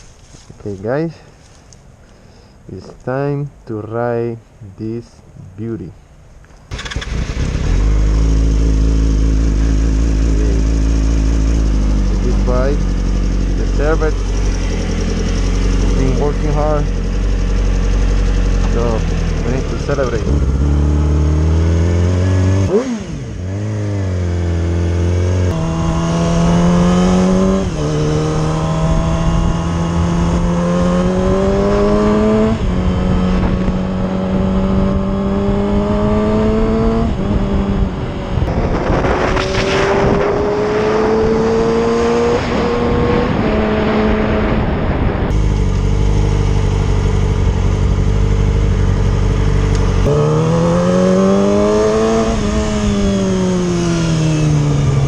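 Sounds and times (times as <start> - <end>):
motorcycle engine revving: 6.7 - 55.0
rush of noise: 38.2 - 48.0.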